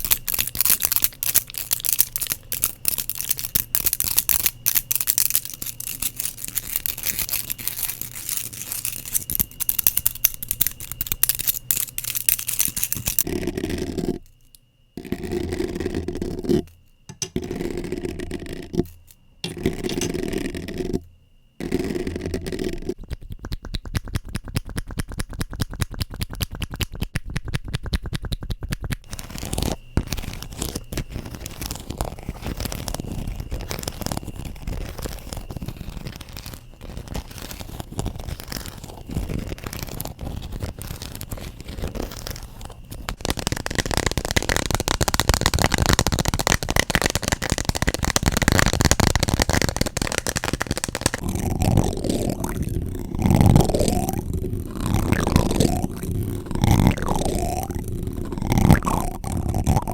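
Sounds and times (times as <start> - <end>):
scratching on objects: 0.0 - 27.0, 29.0 - 59.9
tapping on objects: 17.1 - 17.5.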